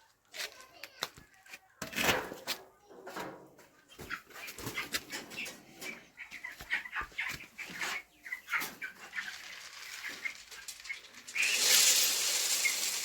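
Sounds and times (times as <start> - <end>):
chickens calling: 3.2 - 13.0.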